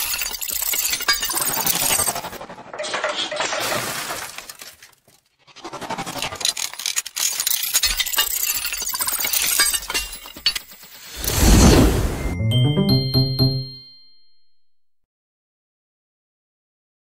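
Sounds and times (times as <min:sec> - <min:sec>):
glass shattering and clinking: 0:00.0 - 0:02.1, 0:06.8 - 0:11.2
music: 0:12.1 - 0:14.7.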